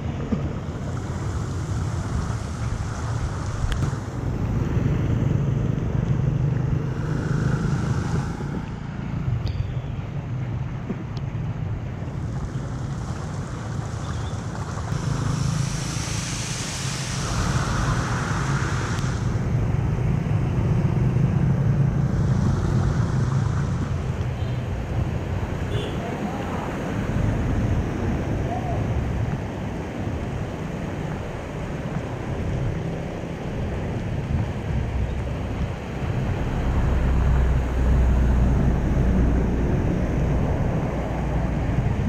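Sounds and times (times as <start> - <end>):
water rushing down a drain: 11.8 - 20.2.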